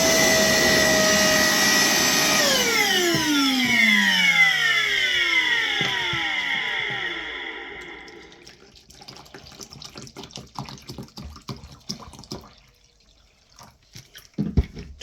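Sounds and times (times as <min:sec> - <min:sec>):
vacuum motor winding down: 0:00.0 - 0:08.4
water trickling and sloshing: 0:06.9 - 0:15.0.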